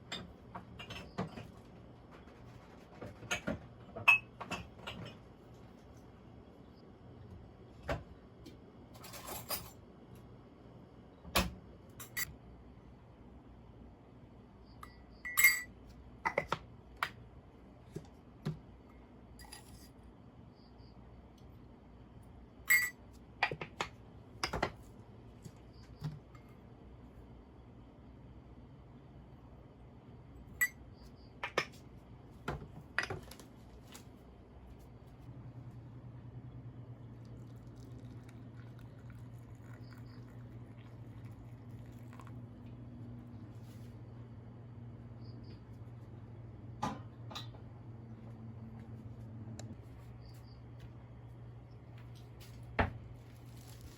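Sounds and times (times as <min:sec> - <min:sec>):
small hard objects clinking: 0:53.3 - 0:53.9.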